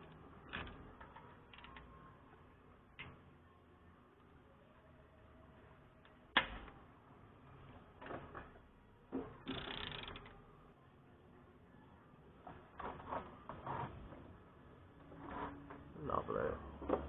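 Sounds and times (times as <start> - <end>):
ratchet clicking: 9.4 - 10.4.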